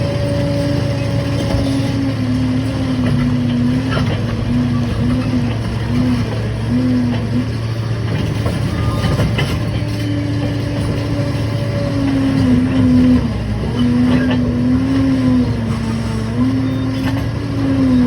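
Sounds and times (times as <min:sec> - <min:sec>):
bulldozer diesel engine running: 0:00.0 - 0:18.0.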